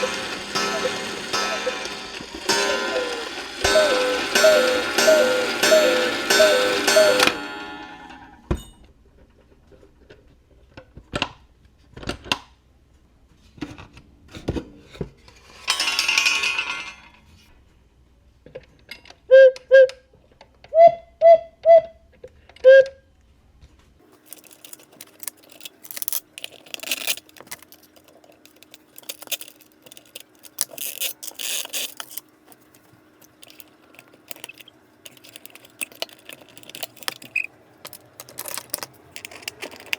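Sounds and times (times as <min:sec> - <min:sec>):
cuckoo whistle notes: 0:00.0 - 0:08.2, 0:20.8 - 0:22.0
clock movement clicks: 0:00.0 - 0:08.3, 0:24.1 - 0:39.9
music box tune: 0:00.0 - 0:08.3
small metallic clatter: 0:14.4 - 0:17.4, 0:24.0 - 0:39.9.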